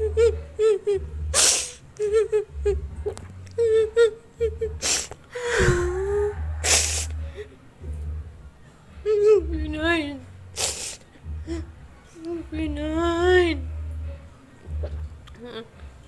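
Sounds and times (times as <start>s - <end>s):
person sobbing: 0.0s - 7.6s, 11.3s - 11.7s
sniffling breaths: 4.8s - 7.8s.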